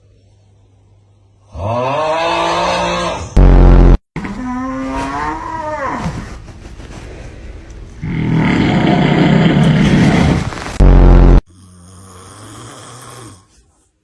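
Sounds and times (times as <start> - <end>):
loud snoring: 8.0 - 10.5, 11.2 - 13.7.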